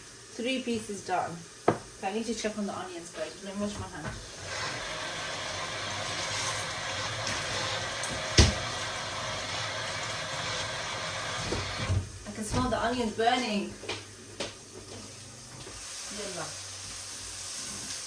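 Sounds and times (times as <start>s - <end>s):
tap water running: 0.0s - 18.0s.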